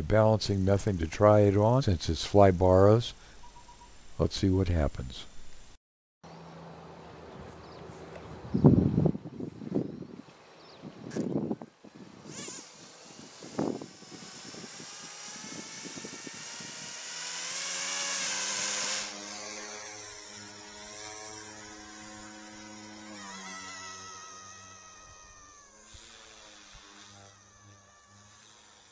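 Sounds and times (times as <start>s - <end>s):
electric motor whine: 11.1s - 28.9s.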